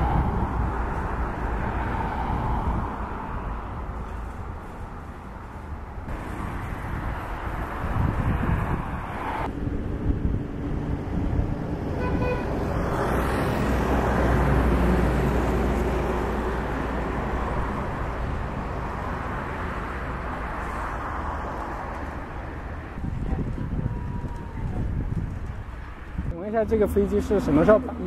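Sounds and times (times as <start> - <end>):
vehicle rumble: 0.0 - 28.0
vehicles passing close by: 0.0 - 28.0
short horn toot: 12.0 - 12.5.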